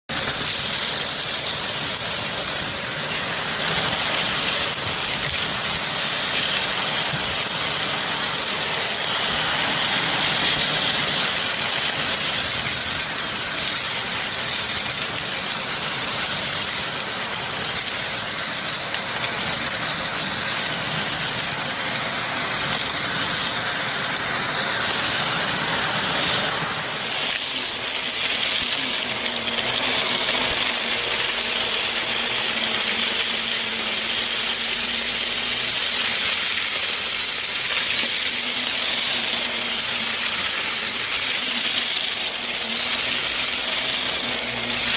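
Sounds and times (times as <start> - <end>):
vacuum cleaner running: 0.1 - 44.9.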